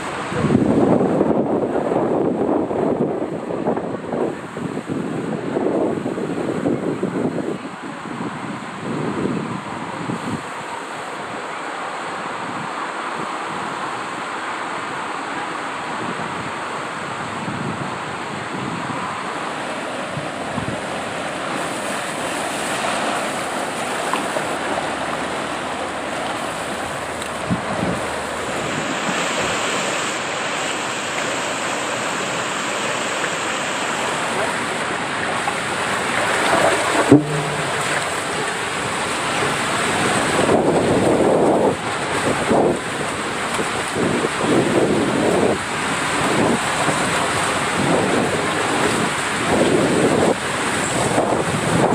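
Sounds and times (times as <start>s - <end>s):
wind noise on microphone: 0.0s - 11.6s, 12.2s - 51.9s
water rushing and splashing: 0.0s - 51.9s
sharp knock: 36.9s - 38.3s.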